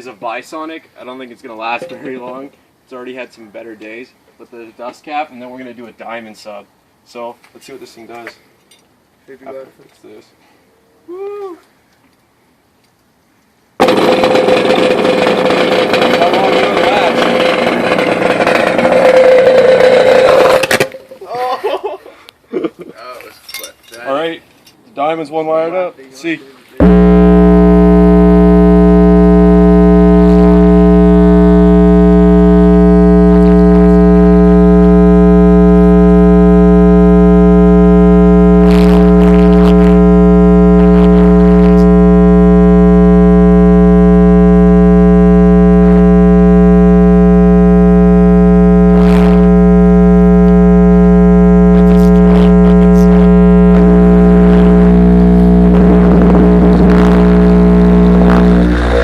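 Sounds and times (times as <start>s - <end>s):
subwoofer blaring mains hum: 13.7s - 21.8s, 26.8s - 59.0s
overdriven subwoofer crackling: 13.8s - 21.2s, 26.8s - 59.0s.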